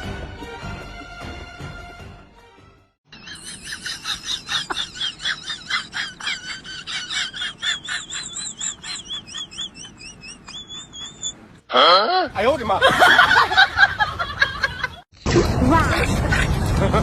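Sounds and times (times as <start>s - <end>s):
animal chirping and warbling: 7.9s - 11.4s.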